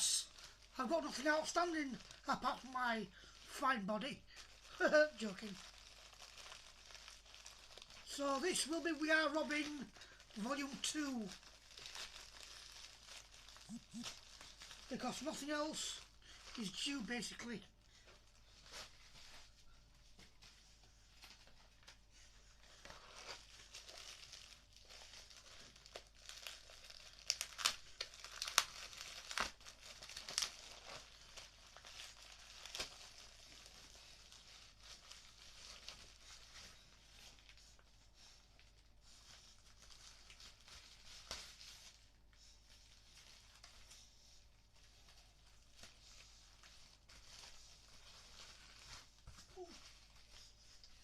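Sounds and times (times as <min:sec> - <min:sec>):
packaging crumpled by hand: 0:00.0 - 0:19.6, 0:22.6 - 0:51.0
package being torn open: 0:23.0 - 0:33.6.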